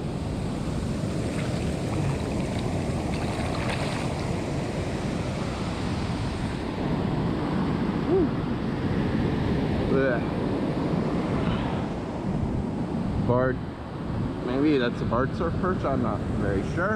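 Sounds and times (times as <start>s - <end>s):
wave washing up beach: 0.0s - 8.0s
wind on microphone: 0.0s - 16.9s.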